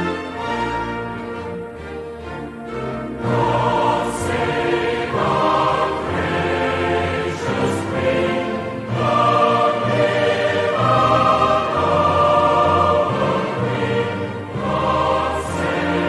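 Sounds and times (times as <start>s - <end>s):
choir with orchestra: 0.0s - 16.0s.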